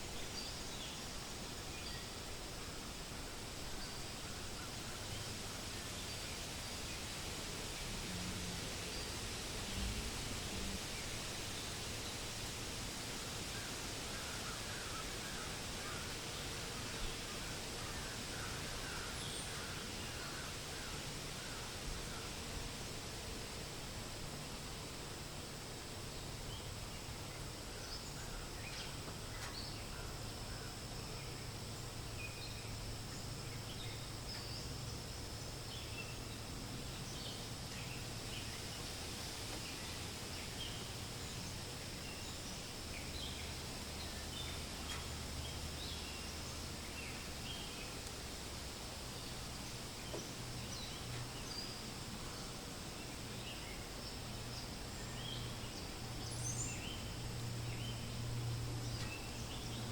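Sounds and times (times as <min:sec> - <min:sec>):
wind hissing: 0:00.0 - 0:28.2.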